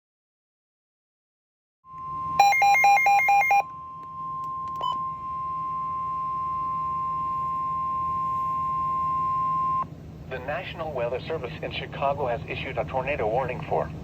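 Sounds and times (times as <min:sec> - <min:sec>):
two-pitch beeps: 0:01.9 - 0:09.8
high warning alarm tone: 0:01.9 - 0:09.9.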